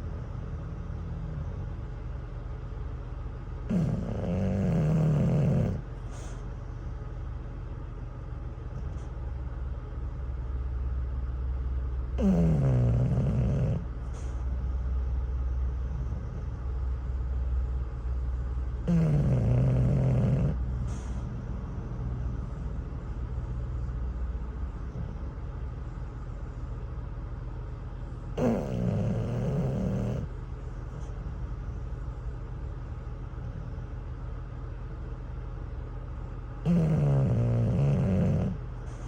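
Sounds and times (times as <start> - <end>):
dog snoring: 0.0 - 1.9, 3.6 - 6.5, 12.2 - 14.6, 15.5 - 16.8, 18.7 - 23.2, 24.7 - 26.1, 28.0 - 31.4, 33.3 - 34.0, 36.6 - 39.0
steady low rumble: 0.0 - 39.0.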